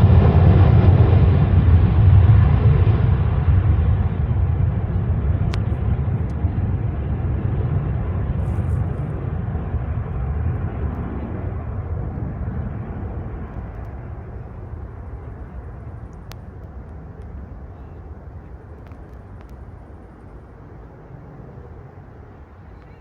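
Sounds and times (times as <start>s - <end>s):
jet engine rumble: 0.0s - 23.0s.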